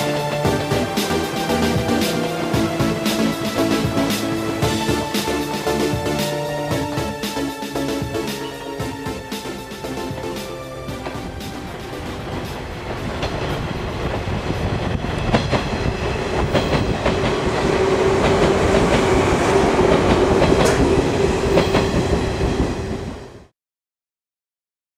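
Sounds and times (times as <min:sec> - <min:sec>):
train wheels clacking over rail joints: 0:08.8 - 0:22.7.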